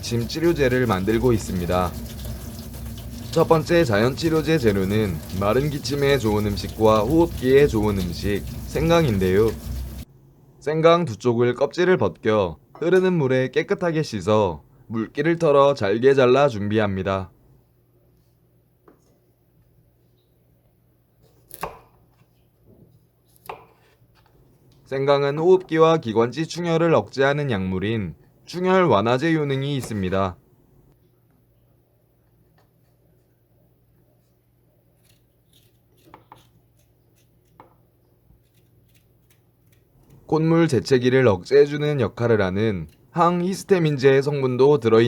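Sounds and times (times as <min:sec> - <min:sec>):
knife chopping: 0:21.5 - 0:22.0, 0:23.4 - 0:24.0, 0:35.0 - 0:37.8.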